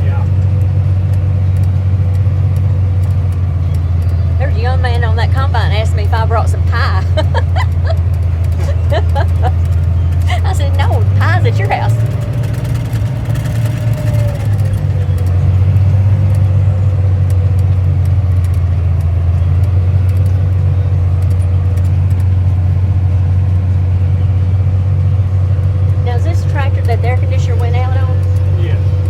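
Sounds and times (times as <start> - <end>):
tractor engine low hum: 0.0 - 29.0
thin steady whine: 2.0 - 22.4.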